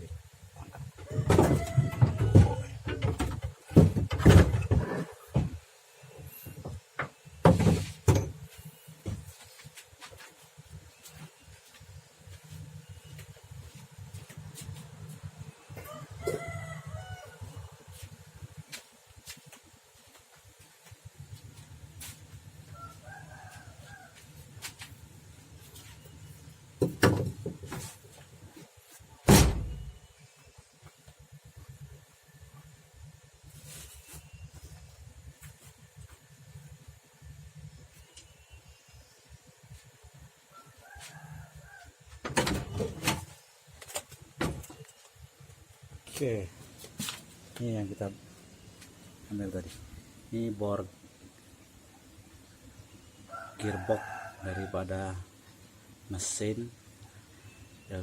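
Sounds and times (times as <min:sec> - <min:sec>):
rooster crowing faintly: 0:00.6 - 0:02.8, 0:15.6 - 0:18.0, 0:22.0 - 0:24.8, 0:40.4 - 0:42.2, 0:53.1 - 0:55.3
metal clunks and knocks: 0:01.0 - 0:05.6, 0:06.6 - 0:08.5, 0:26.8 - 0:27.8, 0:42.2 - 0:43.3.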